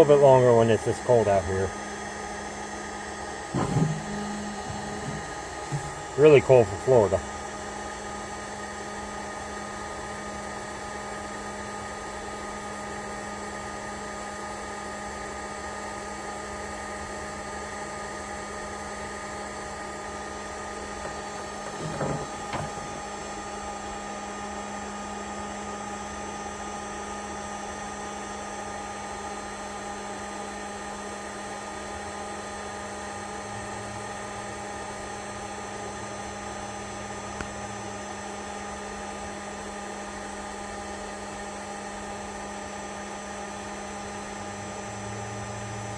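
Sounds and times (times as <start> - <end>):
heat gun hum and whine: 0.0 - 45.9
brief knocks: 3.5 - 6.1, 21.0 - 23.0.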